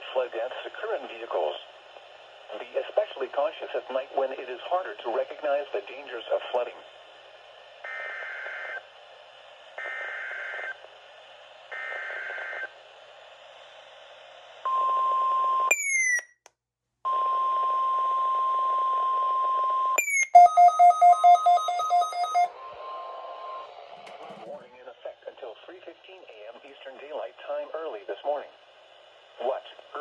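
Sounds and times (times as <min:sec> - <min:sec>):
steady warning alarm tone: 0:17.1 - 0:24.5.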